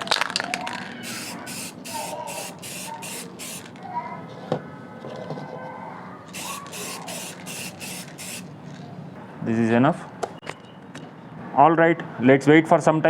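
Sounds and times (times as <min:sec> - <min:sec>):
spray can hissing bursts: 0:01.0 - 0:03.8, 0:06.3 - 0:08.6.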